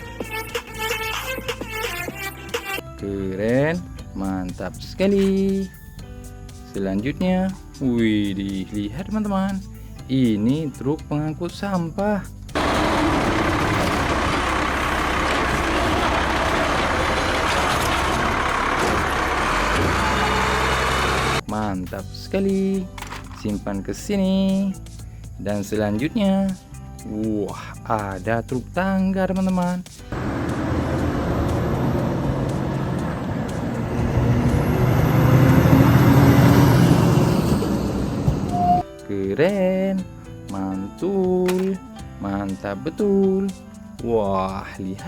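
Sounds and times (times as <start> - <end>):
truck engine idling: 12.5 - 21.4, 30.1 - 38.8.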